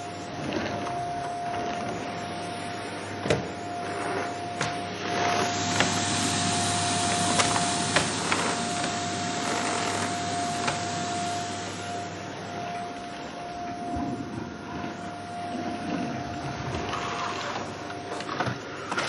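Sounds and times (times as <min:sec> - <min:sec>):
vacuum cleaner running: 0:00.0 - 0:19.0.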